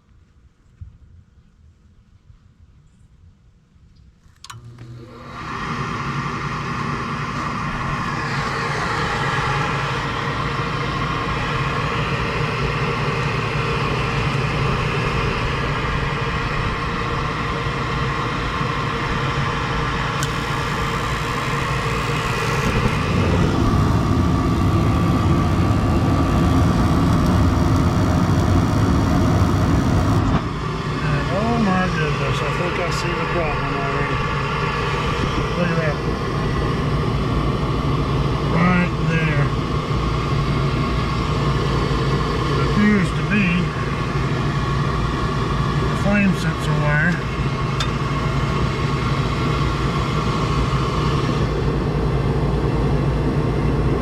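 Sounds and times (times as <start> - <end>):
motor running with thin whine: 4.5 - 38.9
deep rumble: 18.1 - 38.7.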